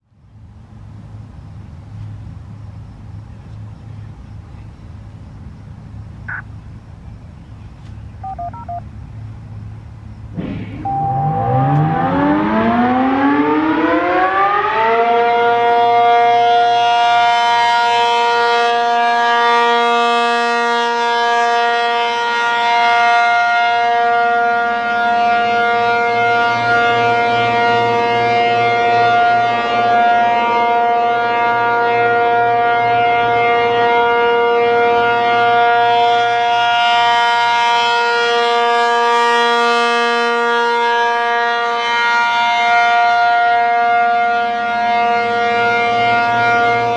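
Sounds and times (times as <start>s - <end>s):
warning siren winding up: 10.8s - 15.4s.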